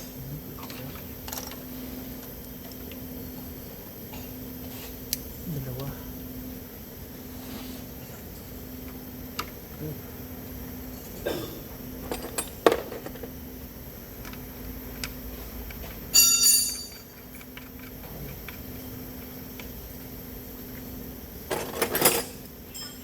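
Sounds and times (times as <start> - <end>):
ringing metallic clang: 16.2 - 17.1, 22.7 - 23.0.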